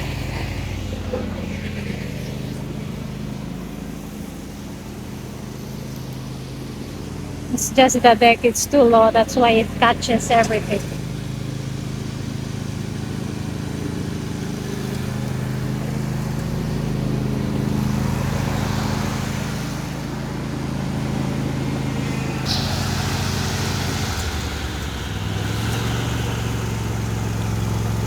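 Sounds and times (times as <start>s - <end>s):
hissing rush: 0.0s - 5.9s, 18.0s - 28.0s
riding mower running: 0.0s - 28.0s.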